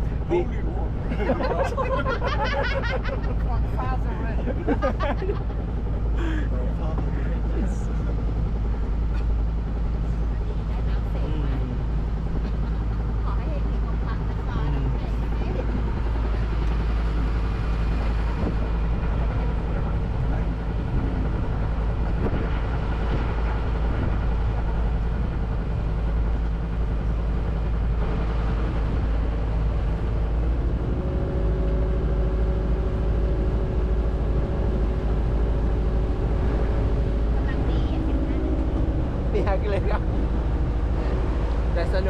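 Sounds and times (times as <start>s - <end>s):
boat engine rumble: 0.0s - 42.0s
higher engine tone: 0.0s - 42.0s
wind noise: 15.4s - 41.8s.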